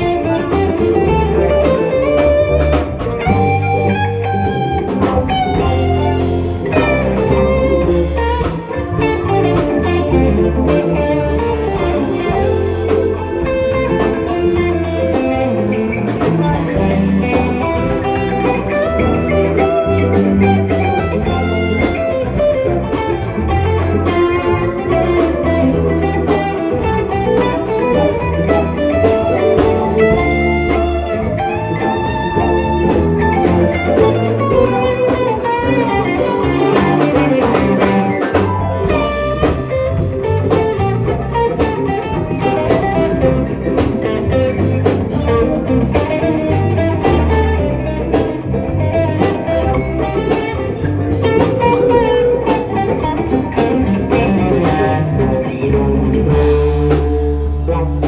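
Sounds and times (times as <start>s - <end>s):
bass guitar: 0.0s - 58.0s
drum kit: 0.0s - 58.0s
electric guitar: 0.0s - 58.0s.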